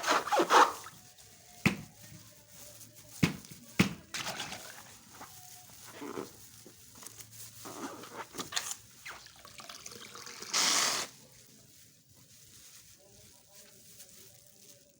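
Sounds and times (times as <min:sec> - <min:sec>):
slime squelching: 0:03.8 - 0:05.3, 0:07.6 - 0:11.2.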